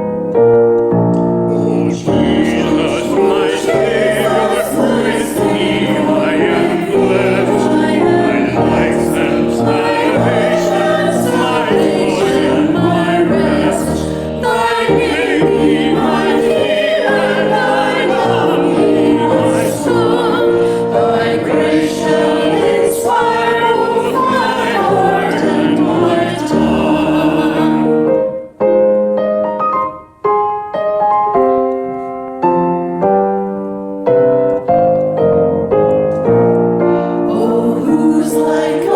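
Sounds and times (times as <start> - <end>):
piano accompaniment: 0.0 - 38.9
choir singing a hymn: 1.5 - 28.3, 37.0 - 38.9.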